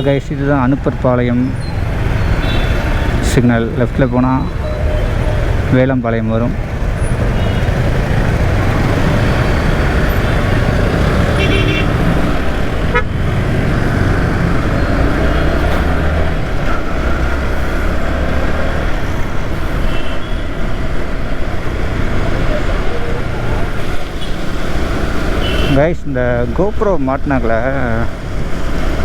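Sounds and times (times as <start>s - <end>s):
wind and road rush: 0.0s - 29.0s
vehicle horn toot: 2.4s - 3.1s, 7.3s - 7.8s, 11.3s - 12.1s, 12.8s - 13.2s, 25.4s - 25.8s
motorcycle engine running: 6.5s - 14.9s.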